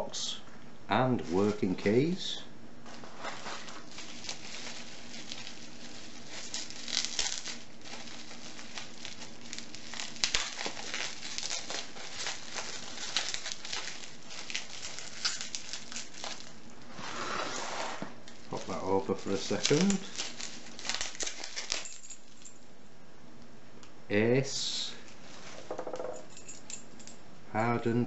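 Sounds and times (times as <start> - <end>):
faint steady hum: 0.0 - 28.0
packaging crinkling and rustling: 1.2 - 2.2, 2.8 - 22.7.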